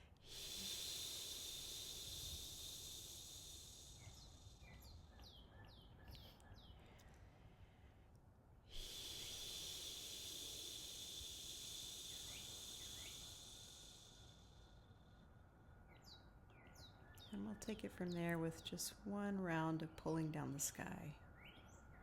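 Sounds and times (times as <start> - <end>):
steady high hiss: 0.0 - 5.1, 8.7 - 15.1.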